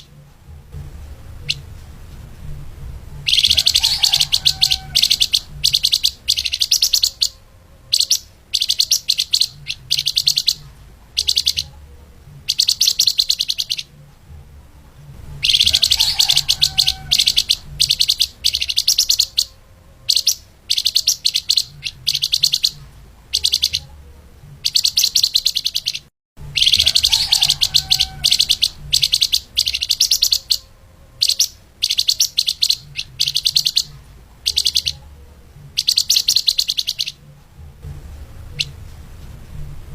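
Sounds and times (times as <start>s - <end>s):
songbird rapid trills: 3.2s - 11.8s, 12.4s - 14.0s, 15.3s - 23.9s, 24.6s - 35.0s, 35.8s - 37.2s.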